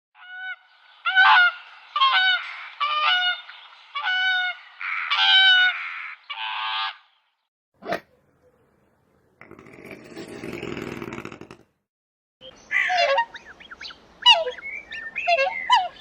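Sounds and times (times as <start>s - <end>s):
swan honking: 0.2s - 7.0s, 12.7s - 13.5s, 14.2s - 16.0s.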